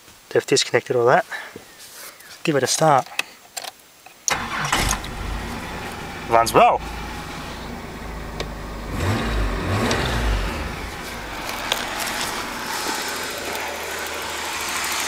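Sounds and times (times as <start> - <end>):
car engine idling: 4.3 - 15.0
car engine revving: 4.3 - 15.0.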